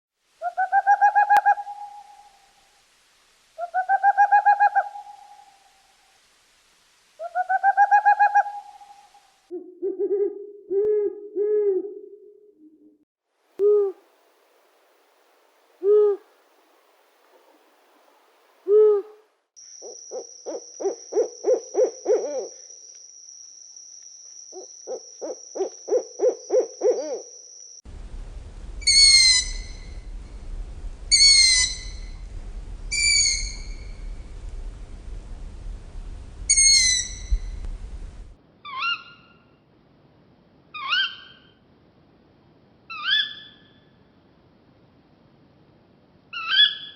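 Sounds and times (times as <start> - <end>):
owl hooting: 0.4 - 2.4, 3.6 - 5.7, 7.2 - 12.2, 13.6 - 14.1, 15.8 - 16.3, 18.7 - 19.2, 19.8 - 22.7, 24.5 - 27.3, 28.0 - 39.3, 42.9 - 43.6
high insect drone: 19.6 - 38.3
low rumble: 27.9 - 38.4
owl screams: 28.8 - 30.1, 31.1 - 32.2, 32.9 - 34.1, 36.5 - 37.6, 38.6 - 39.4, 40.8 - 41.5, 42.9 - 43.8, 46.4 - 46.9.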